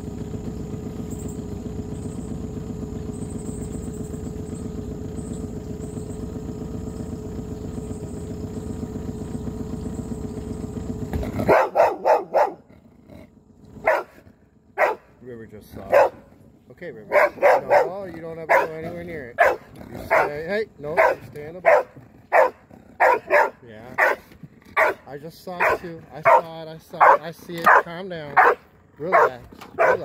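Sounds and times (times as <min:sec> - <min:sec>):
boat motor running: 0:00.0 - 0:30.0
dog barking: 0:11.5 - 0:12.6, 0:13.8 - 0:14.2, 0:14.8 - 0:15.1, 0:15.8 - 0:16.3, 0:17.1 - 0:30.0.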